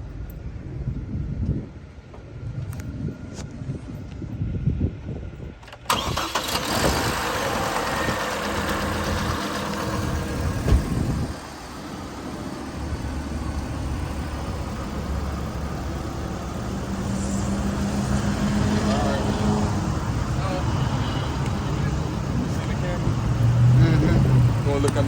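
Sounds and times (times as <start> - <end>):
truck engine starting and idling: 5.5 - 25.0.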